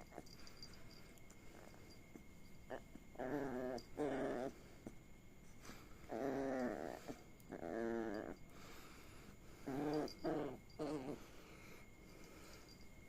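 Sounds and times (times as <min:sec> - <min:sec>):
puppy whining: 0:02.7 - 0:05.0, 0:05.7 - 0:08.8, 0:09.5 - 0:12.5.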